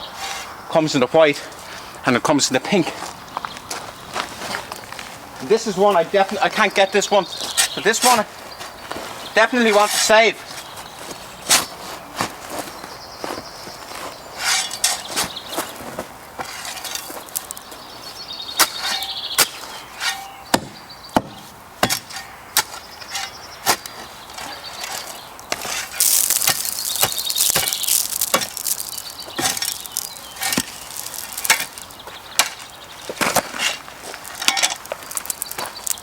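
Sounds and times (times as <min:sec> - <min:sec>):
hand tool scraping gravel: 0:00.0 - 0:02.0, 0:03.7 - 0:12.7, 0:13.3 - 0:36.0
stones and grit clicking: 0:16.4 - 0:17.9, 0:20.2 - 0:36.0.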